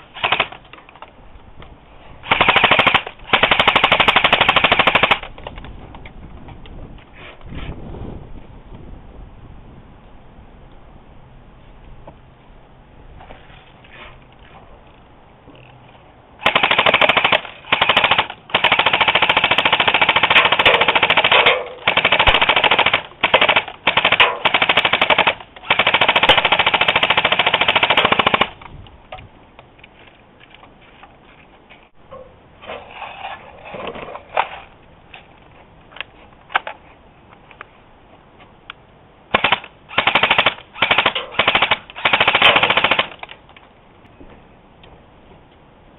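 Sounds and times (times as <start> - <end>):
airsoft guns firing bursts: 0.2 - 0.5, 2.3 - 5.2, 16.4 - 28.6, 39.3 - 43.2.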